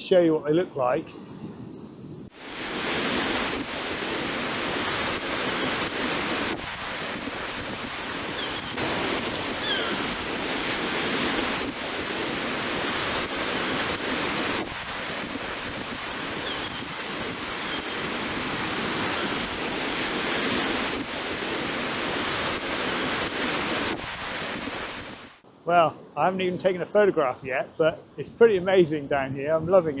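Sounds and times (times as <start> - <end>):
sea waves breaking on beach: 2.3 - 25.4.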